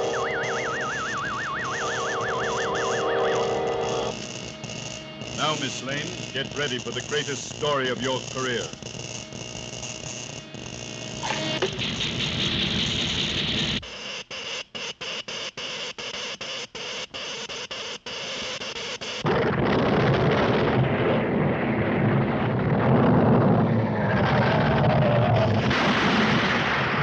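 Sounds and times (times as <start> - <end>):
hissing electrical crackle: 0.0 - 27.0
dense earthquake rumble: 19.3 - 27.0.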